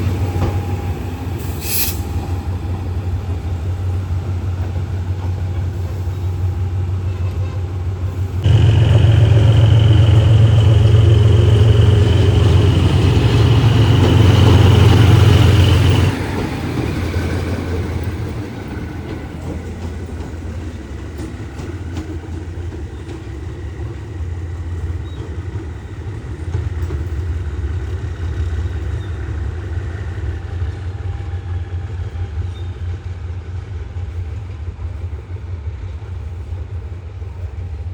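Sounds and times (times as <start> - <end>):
diesel train engine rumbling: 0.0 - 37.9
loud steady high tone: 8.4 - 16.1.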